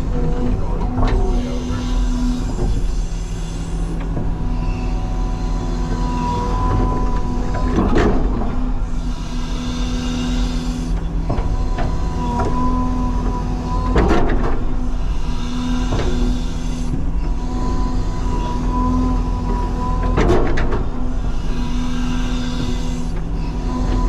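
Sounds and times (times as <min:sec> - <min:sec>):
excavator engine drone: 0:00.0 - 0:24.0.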